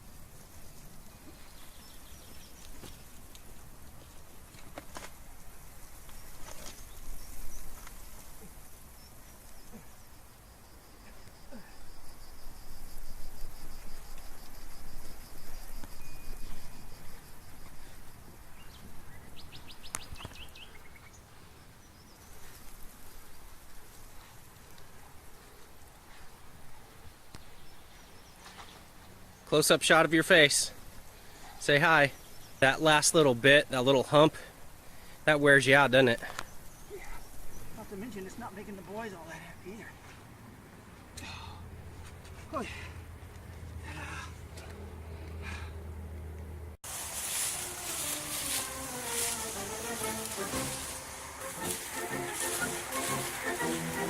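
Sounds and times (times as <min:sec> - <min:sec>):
bird chirping: 0:00.6 - 0:03.1, 0:18.5 - 0:22.5
footsteps and rustling: 0:00.7 - 0:09.7, 0:22.2 - 0:26.6, 0:27.3 - 0:29.0, 0:41.9 - 0:42.6, 0:46.8 - 0:54.0.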